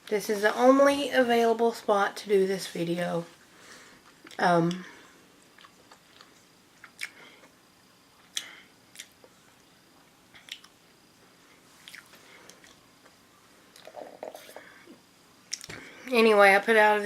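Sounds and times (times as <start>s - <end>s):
person chewing food: 4.0s - 7.6s, 8.2s - 9.7s, 10.3s - 10.8s, 11.5s - 14.6s, 15.5s - 15.8s.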